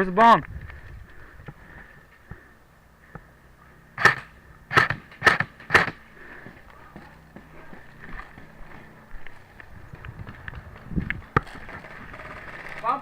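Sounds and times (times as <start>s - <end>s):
airsoft gunshots: 4.0s - 6.0s.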